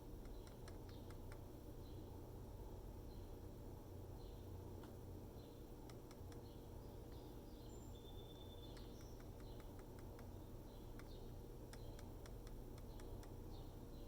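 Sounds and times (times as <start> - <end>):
laptop fan clicking: 0.1 - 1.6, 5.8 - 6.6, 8.7 - 13.8.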